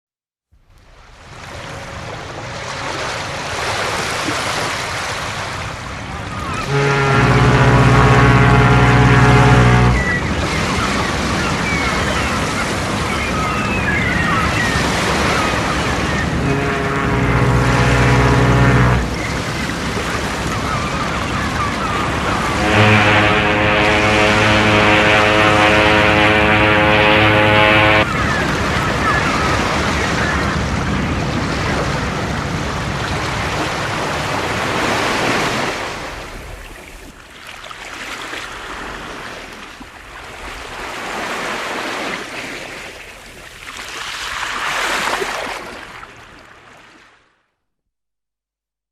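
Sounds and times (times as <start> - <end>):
sea waves breaking: 1.2 - 47.2
steady low tone: 6.6 - 10.2, 16.3 - 19.4, 22.6 - 28.1.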